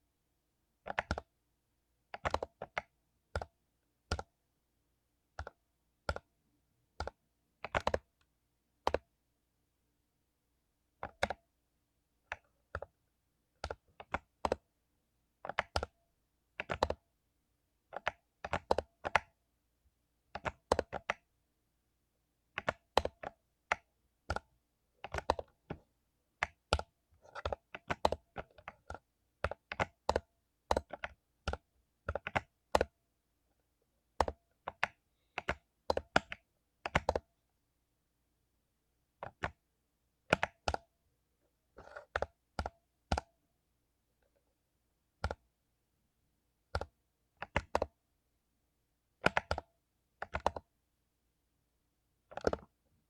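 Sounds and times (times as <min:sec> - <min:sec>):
mechanical keyboard typing: 0:00.9 - 0:01.3, 0:02.1 - 0:03.5, 0:07.0 - 0:08.1, 0:08.8 - 0:09.0, 0:13.6 - 0:14.6, 0:16.6 - 0:17.0, 0:17.9 - 0:19.3, 0:20.4 - 0:21.2, 0:22.6 - 0:25.8, 0:26.4 - 0:32.9, 0:34.2 - 0:37.3, 0:39.2 - 0:39.6, 0:40.3 - 0:40.9, 0:41.8 - 0:43.3, 0:45.2 - 0:45.4, 0:46.7 - 0:47.9, 0:49.2 - 0:50.7, 0:52.3 - 0:52.7.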